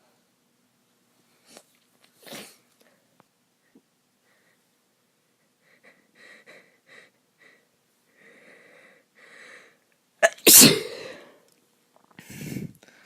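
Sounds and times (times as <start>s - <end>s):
woman sneezing: 10.2s - 11.4s.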